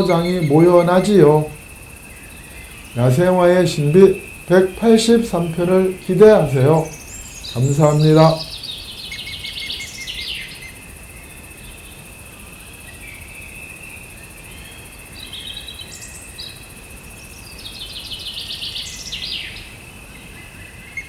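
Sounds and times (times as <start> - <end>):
faint hiss: 0.0 - 8.6
high insect buzz: 0.0 - 10.5
birds singing trilled phrases: 0.0 - 10.6.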